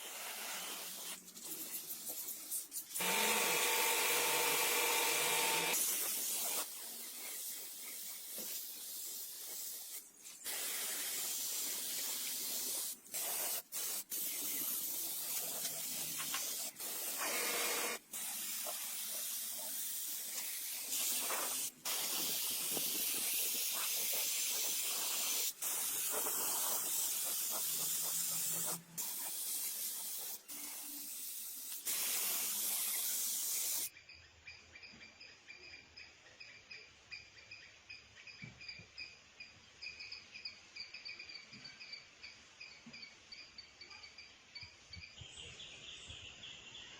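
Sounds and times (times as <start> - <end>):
high-pitched hissing spray: 0.0 - 33.9.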